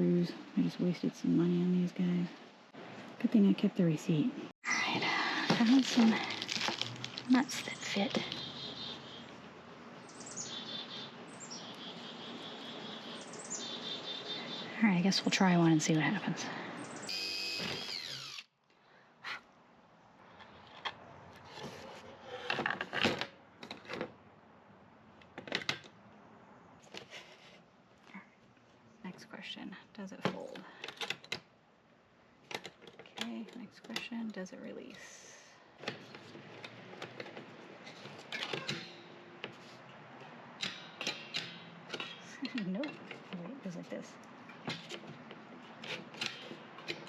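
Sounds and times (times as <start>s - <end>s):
metal shelf brackets clicking: 40.6s - 43.2s.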